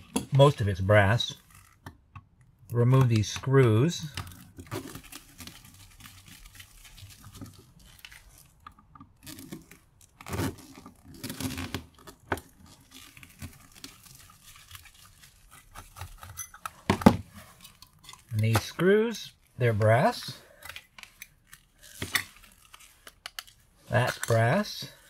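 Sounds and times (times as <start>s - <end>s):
screwdriver scraping and creaking: 1.4s - 1.9s, 15.5s - 18.5s.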